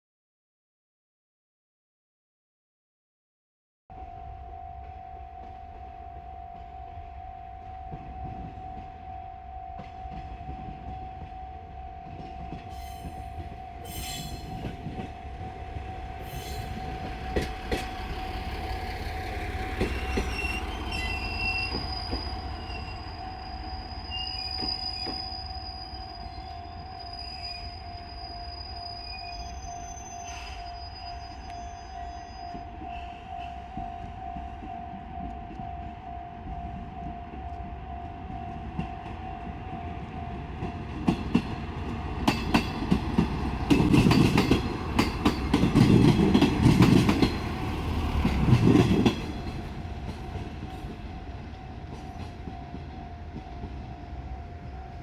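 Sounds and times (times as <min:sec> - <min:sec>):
diesel railcar rumble: 0:03.9 - 0:55.0
level crossing warning bell: 0:03.9 - 0:55.0
high wheel squeal: 0:12.7 - 0:14.8, 0:16.2 - 0:18.4, 0:19.8 - 0:33.6
wheel clacks over rail joints: 0:40.6 - 0:53.8.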